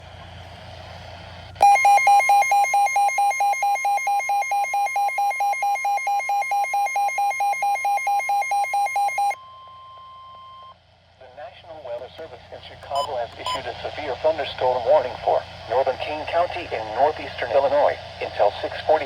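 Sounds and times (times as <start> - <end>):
fast buzzy beeping: 1.6 - 9.4
steady alarm tone: 1.6 - 9.4
faint radio hiss and hum: 11.2 - 19.0.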